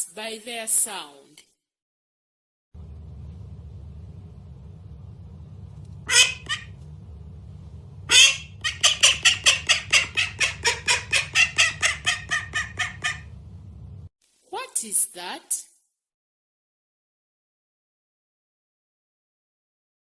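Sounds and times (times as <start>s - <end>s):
duck quacking: 6.0s - 6.8s, 8.1s - 13.4s.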